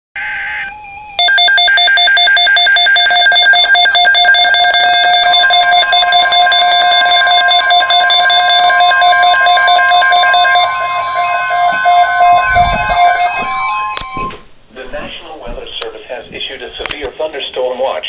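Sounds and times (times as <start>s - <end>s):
rapidly pulsing high-pitched alarm: 1.1s - 14.4s
steady electronic tone: 3.1s - 14.5s
electronic tone burst: 3.8s - 14.4s.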